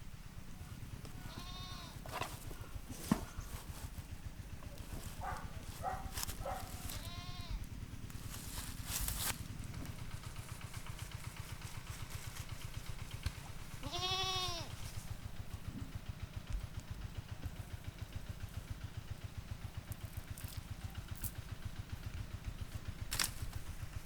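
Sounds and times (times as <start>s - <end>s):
steady low hum: 0.0s - 24.0s
goat bleating: 1.0s - 2.2s, 5.2s - 7.7s, 13.7s - 14.9s.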